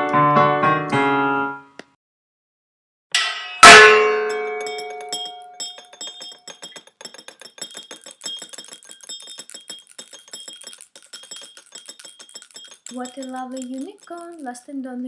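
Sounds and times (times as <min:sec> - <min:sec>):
high-pitched tinkling clicks: 0:04.3 - 0:14.6.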